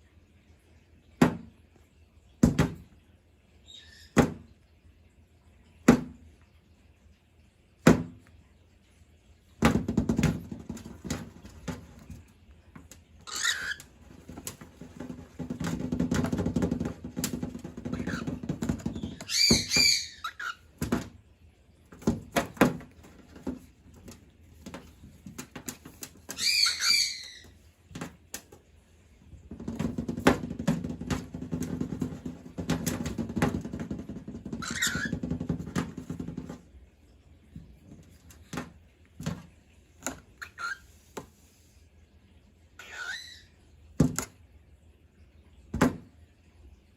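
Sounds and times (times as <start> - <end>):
claws and beaks tapping: 9.6 - 21.2, 21.8 - 36.8, 37.5 - 41.5, 44.0 - 44.4
cockatiels chirping: 13.2 - 13.8, 18.0 - 18.3, 19.0 - 20.6, 26.3 - 27.5, 34.6 - 35.2, 40.4 - 40.9, 42.8 - 43.5.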